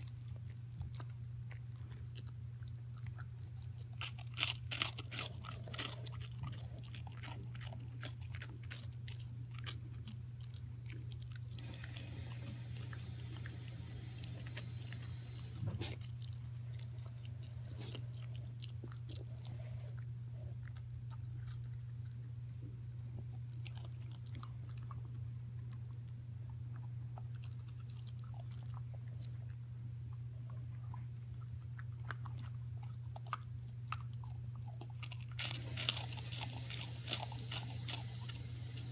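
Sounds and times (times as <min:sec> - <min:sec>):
puppy chewing and crunching food: 0:00.0 - 0:38.9
steady low hum: 0:00.0 - 0:38.9
hiss: 0:11.6 - 0:15.8
thump: 0:15.6 - 0:16.0.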